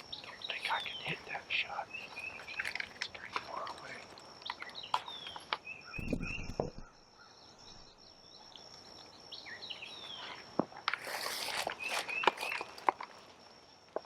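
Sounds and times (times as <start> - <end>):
small birds chirping: 0.0 - 13.9
low muffled bump: 6.0 - 7.0
rustle: 8.3 - 14.0.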